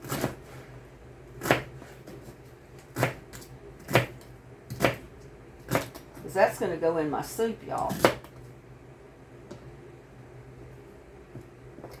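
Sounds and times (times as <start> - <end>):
knife chopping on cutting board: 0.0 - 0.6, 1.4 - 6.1, 7.9 - 8.3.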